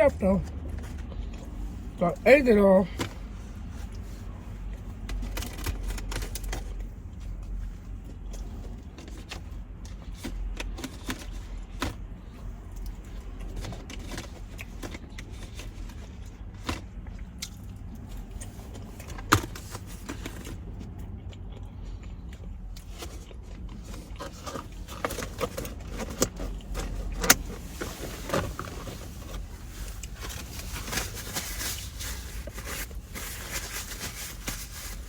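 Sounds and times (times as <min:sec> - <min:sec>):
handling clicks and rustles: 0:22.3 - 0:35.0.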